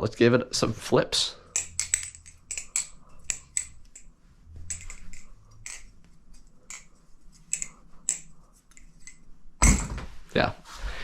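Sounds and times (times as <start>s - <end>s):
butterfly knife clacking: 1.5s - 4.1s, 4.7s - 9.2s.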